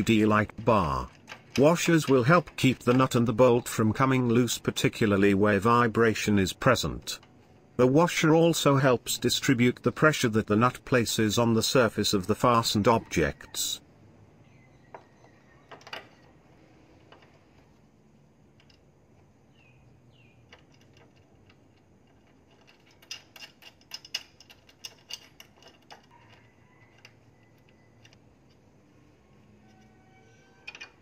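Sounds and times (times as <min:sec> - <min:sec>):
small metallic clicks and ticks: 0:00.0 - 0:07.6, 0:18.4 - 0:19.0, 0:20.4 - 0:30.0, 0:30.6 - 0:31.0.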